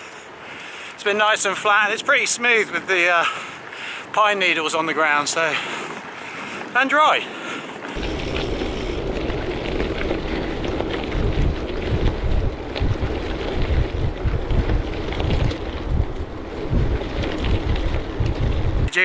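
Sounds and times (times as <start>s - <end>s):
bicycle tyres rolling on trail: 0.0s - 19.0s
wind buffeting microphone: 7.7s - 19.0s.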